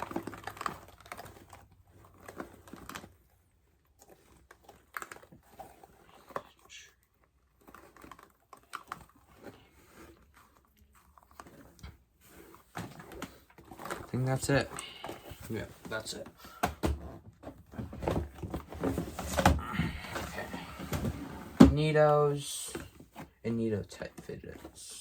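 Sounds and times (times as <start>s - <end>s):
toys rummaged through by hand: 0.0s - 25.0s.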